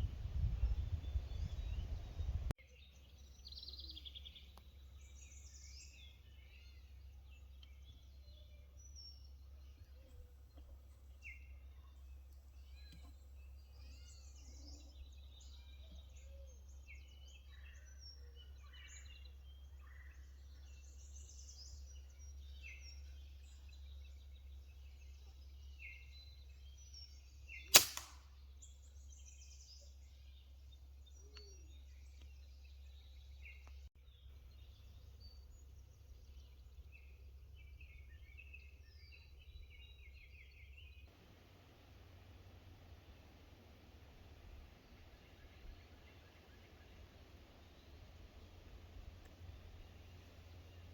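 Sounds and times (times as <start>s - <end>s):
small birds chirping: 0.4s - 50.9s
pellet rifle shot: 27.7s - 28.3s.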